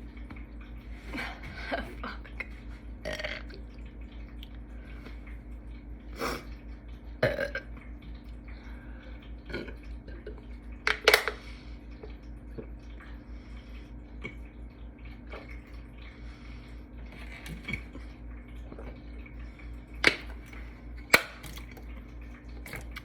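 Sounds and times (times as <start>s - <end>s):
woman burping: 3.0s - 3.5s, 7.2s - 7.7s.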